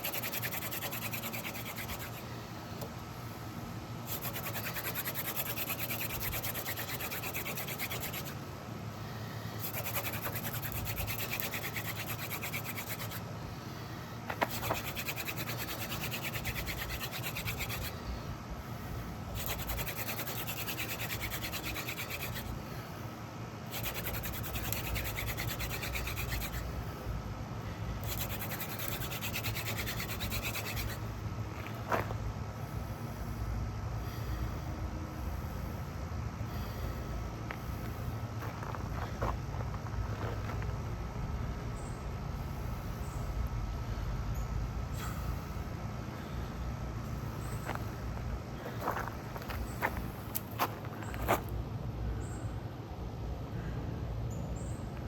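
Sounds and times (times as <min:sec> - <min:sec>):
hand drill spindle rubbing: 0:00.0 - 0:02.3, 0:04.0 - 0:08.4, 0:09.6 - 0:13.2, 0:14.3 - 0:18.0, 0:19.4 - 0:22.6, 0:23.7 - 0:26.8, 0:28.0 - 0:31.1.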